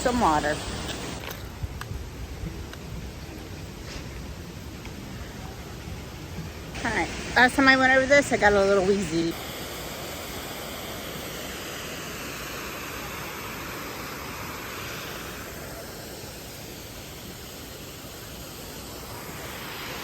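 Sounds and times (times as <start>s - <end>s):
waterfall roaring: 0.0s - 1.2s, 6.8s - 20.0s.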